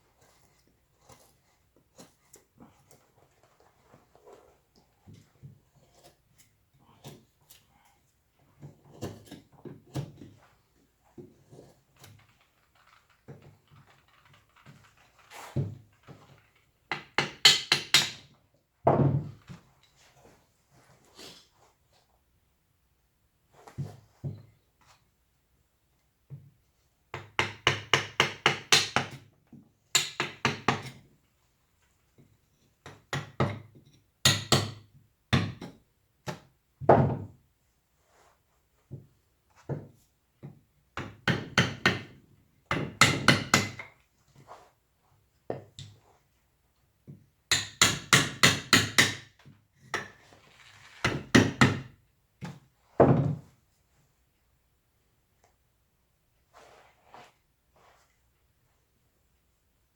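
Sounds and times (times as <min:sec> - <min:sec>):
mallet tapping chisel into wood: 0:16.9 - 0:18.2, 0:42.7 - 0:43.9, 0:47.5 - 0:49.2.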